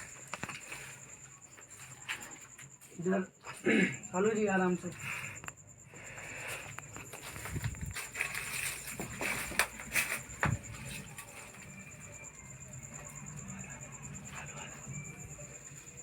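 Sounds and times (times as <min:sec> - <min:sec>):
steady high-pitched whine: 0:00.0 - 0:16.0
rustling: 0:06.2 - 0:13.6
footsteps: 0:06.3 - 0:12.2.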